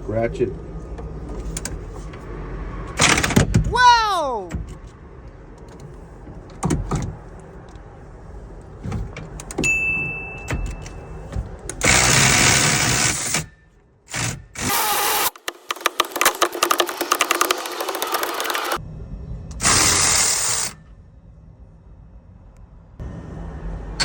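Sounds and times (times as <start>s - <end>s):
electric ratchet clicking: 11.8s - 13.5s, 14.1s - 18.8s, 19.6s - 20.8s
knocks and clatter: 15.3s - 18.8s.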